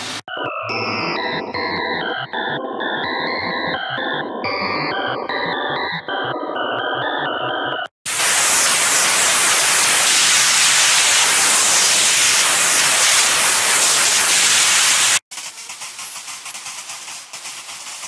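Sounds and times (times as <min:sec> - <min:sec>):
white noise hiss: 0:00.0 - 0:00.2, 0:08.1 - 0:15.2.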